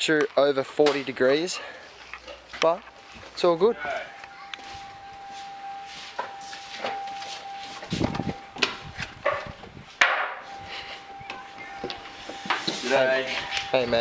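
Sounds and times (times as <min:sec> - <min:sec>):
faint high hum: 0:10.3 - 0:14.0.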